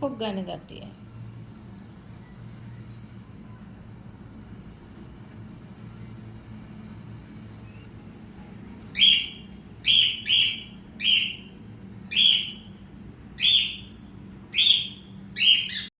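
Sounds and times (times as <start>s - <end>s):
cockatiel chirping calls: 9.0s - 11.4s, 12.1s - 12.6s, 13.4s - 13.9s, 14.5s - 15.9s.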